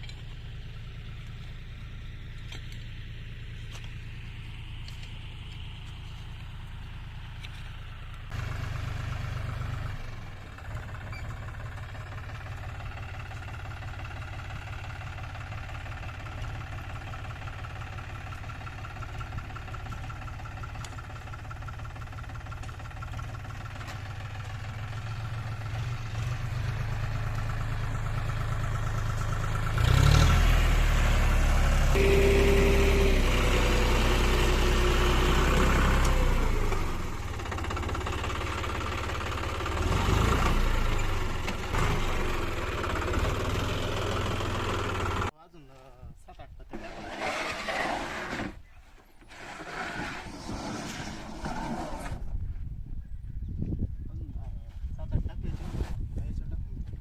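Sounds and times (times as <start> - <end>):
engine humming steadily: 0.0 - 45.4.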